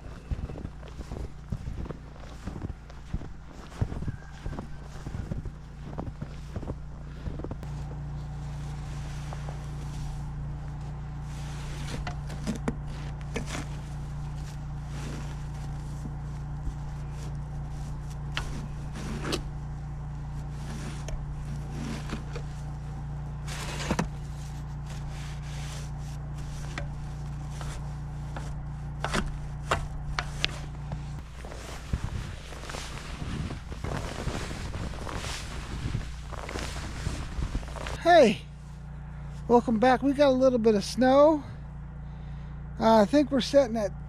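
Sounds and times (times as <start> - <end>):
low machine hum: 0.0 - 44.0
scrapes and knocks: 10.7 - 19.6, 20.4 - 22.8, 23.4 - 38.0.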